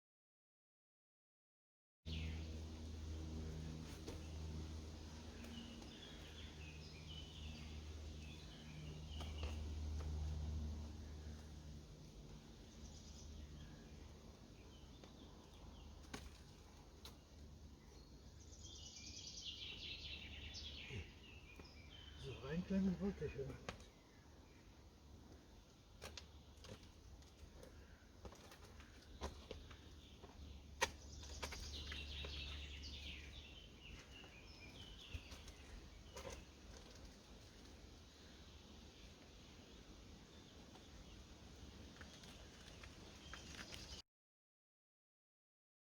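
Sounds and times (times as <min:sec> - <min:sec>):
songbird singing: 0:02.1 - 0:28.1, 0:28.7 - 0:44.0
faint bird chirps: 0:17.9 - 0:24.7.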